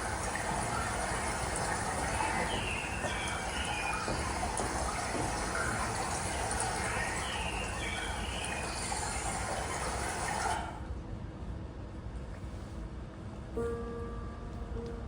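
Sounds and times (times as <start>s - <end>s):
birds chirping: 0.0s - 10.5s
running water rush: 0.0s - 10.9s.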